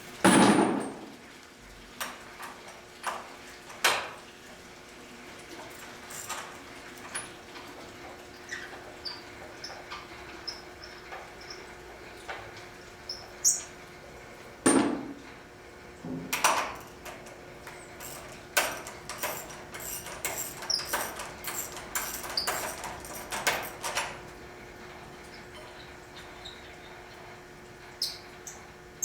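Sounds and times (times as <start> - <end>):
metal clinks and knocks: 18.0 - 24.1.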